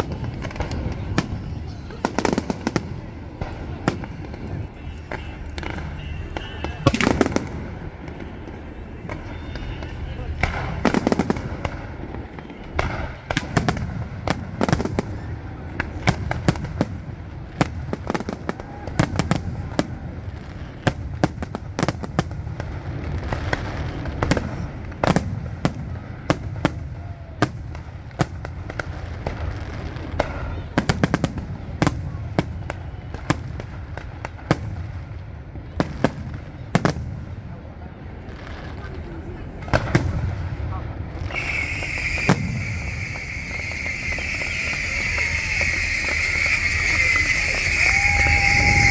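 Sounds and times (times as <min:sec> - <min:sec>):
fireworks shell bursts and crackles: 0:41.3 - 0:48.9.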